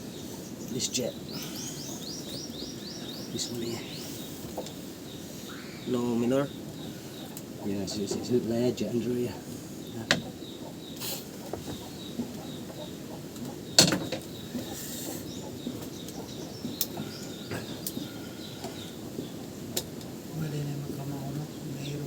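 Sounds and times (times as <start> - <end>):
steady low background noise: 0.0 - 22.0.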